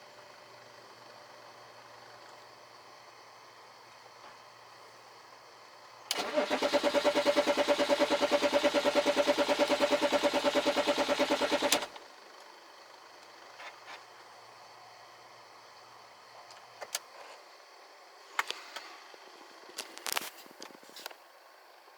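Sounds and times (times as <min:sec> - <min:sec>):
diesel engine cranking on starter: 0:06.1 - 0:12.3.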